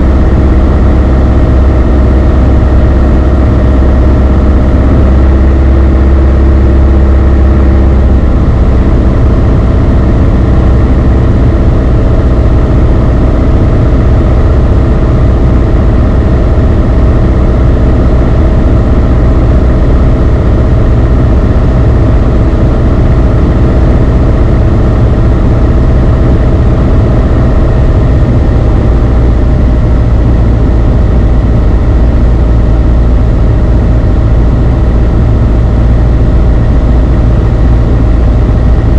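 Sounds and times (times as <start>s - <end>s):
airplane engine drone in cabin: 0.0s - 38.9s.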